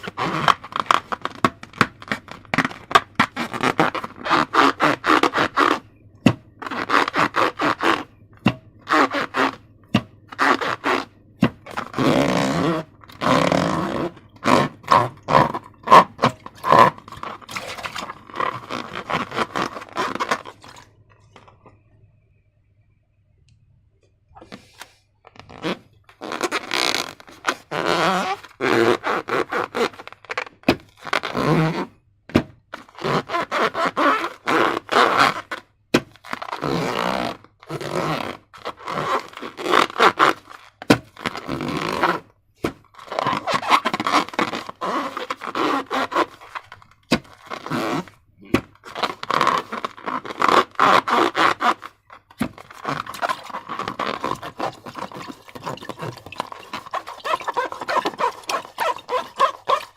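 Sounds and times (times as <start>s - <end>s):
slime squishing and crackling: 0.0s - 8.1s, 10.3s - 21.0s, 42.8s - 59.9s.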